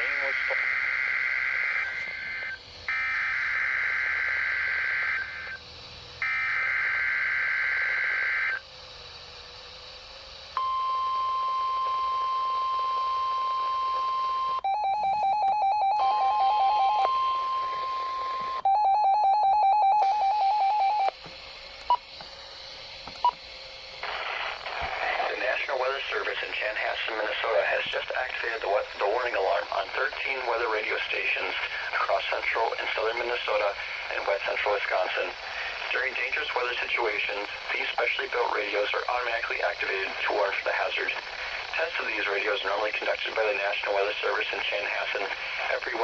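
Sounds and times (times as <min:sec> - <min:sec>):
steady alarm tone: 0:00.0 - 0:05.6, 0:06.2 - 0:08.6, 0:10.6 - 0:21.2
shrill buzzing data bursts: 0:00.0 - 0:08.6, 0:10.6 - 0:21.2, 0:24.0 - 0:46.0.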